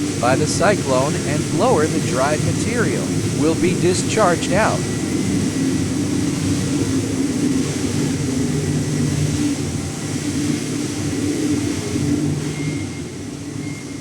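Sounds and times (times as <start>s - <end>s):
faint high whine: 0.0s - 5.6s
blower mechanical drone: 0.0s - 12.4s.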